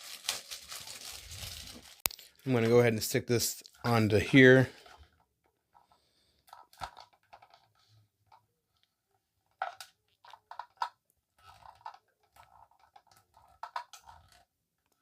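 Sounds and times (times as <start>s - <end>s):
plastic parts clicking and scraping: 4.7s - 15.0s.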